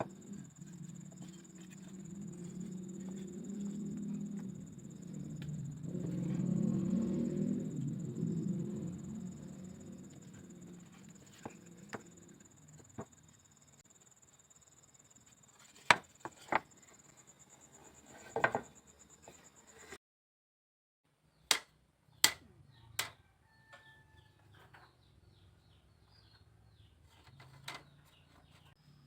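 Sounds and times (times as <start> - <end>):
high insect trill: 0.0 - 15.8
bamboo knocking and cracking: 21.5 - 22.4.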